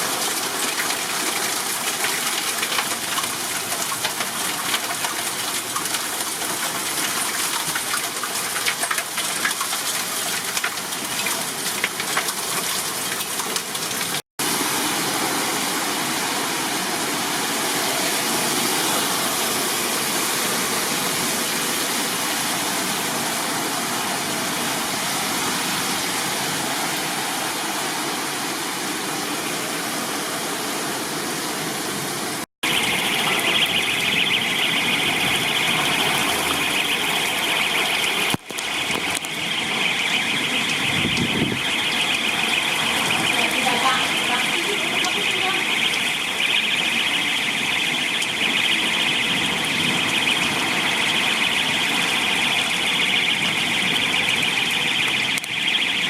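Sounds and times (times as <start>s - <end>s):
heavy rain: 0.0s - 56.0s
high-pitched alarm: 32.6s - 56.0s.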